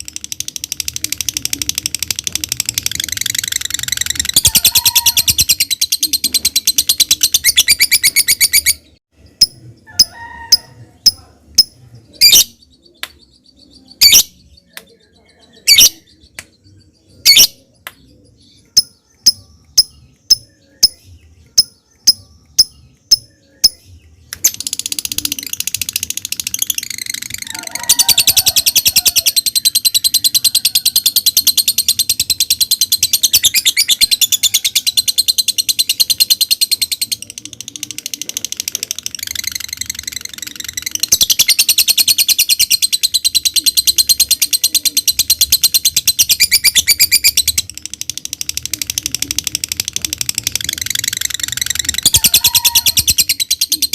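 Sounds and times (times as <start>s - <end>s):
lovebird chattering trill: 0.0s - 14.7s, 15.5s - 16.3s, 17.2s - 17.6s, 24.4s - 53.9s
lovebird ticking calls: 18.6s - 23.8s.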